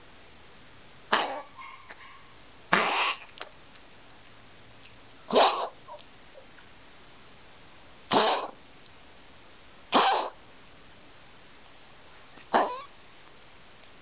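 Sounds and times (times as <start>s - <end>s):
pet coughing: 1.1s - 1.8s, 2.7s - 3.3s, 5.3s - 6.0s, 8.1s - 8.6s, 9.9s - 10.4s, 12.5s - 12.9s.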